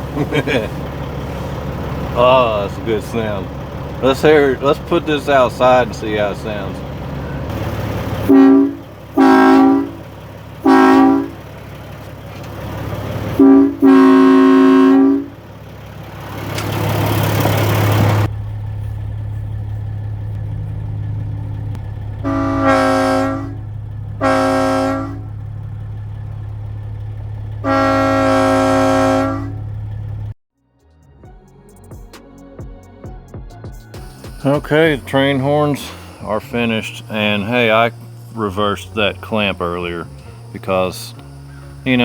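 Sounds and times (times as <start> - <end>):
low engine hum: 0.0 - 30.4, 31.3 - 42.0
train-style air horn blasts: 7.6 - 11.6, 13.3 - 15.4, 22.2 - 25.4, 27.6 - 29.8
rising hiss: 34.0 - 42.0.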